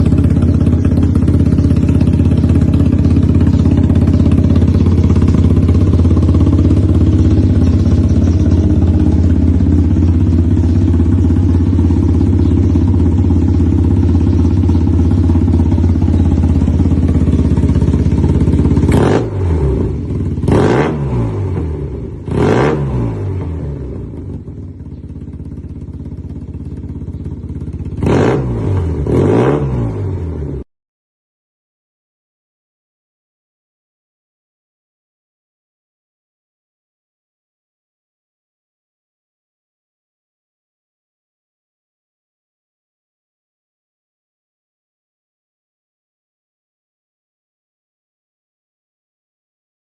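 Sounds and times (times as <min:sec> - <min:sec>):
scooter engine idling and revving: 0:00.0 - 0:30.7.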